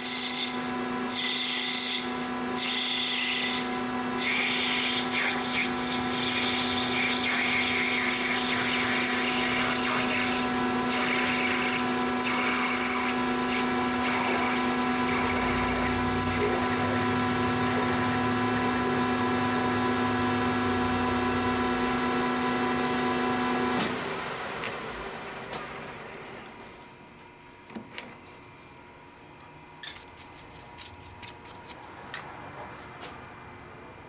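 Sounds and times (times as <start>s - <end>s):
metal lathe humming: 0.0s - 26.5s.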